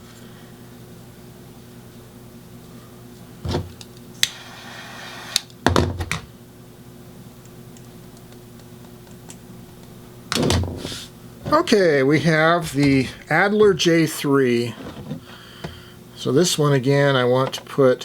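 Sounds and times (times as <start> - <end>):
steady low hum: 5.4 - 18.0.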